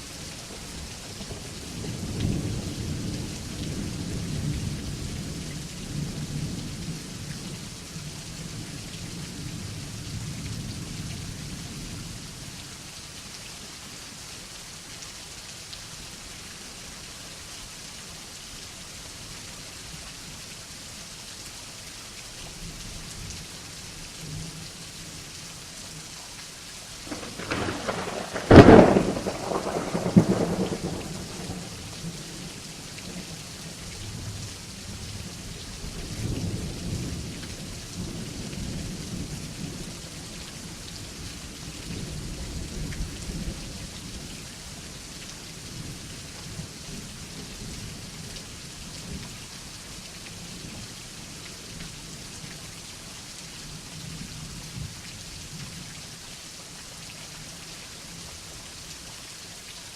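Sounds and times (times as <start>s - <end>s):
steady rain falling: 0.0s - 59.9s
thunderclap rolling into rumbling: 27.1s - 31.9s
low thunder rumbles: 27.1s - 33.3s.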